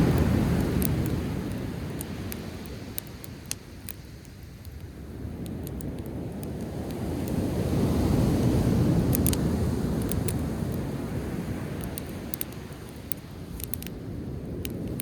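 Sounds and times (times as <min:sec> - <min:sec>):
ocean wave washing ashore: 0:00.0 - 0:04.1, 0:06.1 - 0:13.6
campfire pops and crackles: 0:00.0 - 0:15.0.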